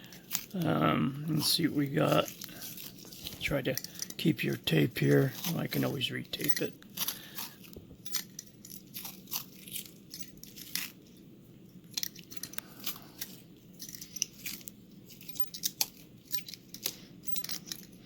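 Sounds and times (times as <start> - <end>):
tape peeling and crinkling: 2.1 - 4.0, 8.6 - 11.2.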